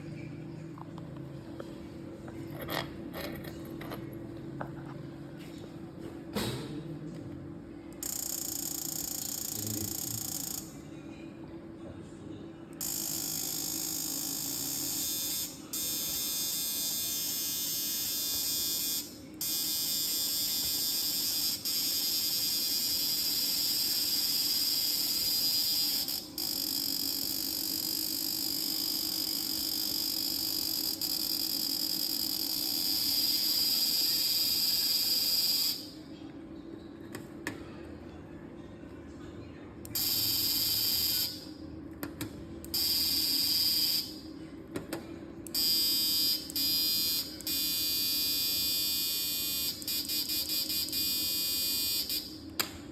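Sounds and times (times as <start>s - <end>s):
high-pitched electronic whine: 8.0s - 10.8s.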